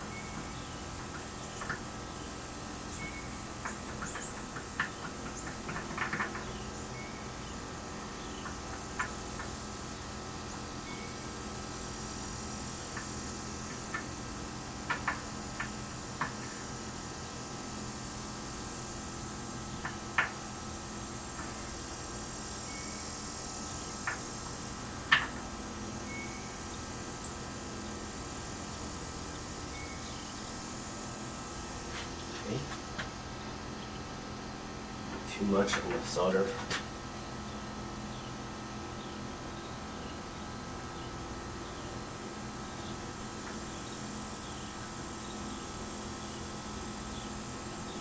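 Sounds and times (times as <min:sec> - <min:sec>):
steady electrical hum: 0:00.0 - 0:48.0
steady hiss: 0:21.0 - 0:38.7
light clicks and taps: 0:35.1 - 0:36.9.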